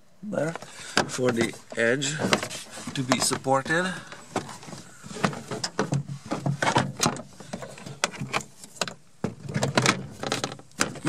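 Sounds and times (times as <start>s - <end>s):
plastic rubbing against fittings: 0.6s - 11.0s
plastic panel clicks and knocks: 5.1s - 11.0s.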